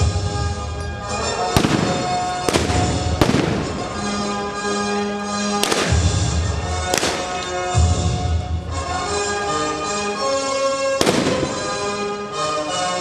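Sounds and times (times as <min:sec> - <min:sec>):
background music: 0:00.0 - 0:13.0
loud gunshots with echo: 0:01.5 - 0:04.4, 0:05.6 - 0:06.2, 0:06.8 - 0:07.6, 0:11.0 - 0:12.2.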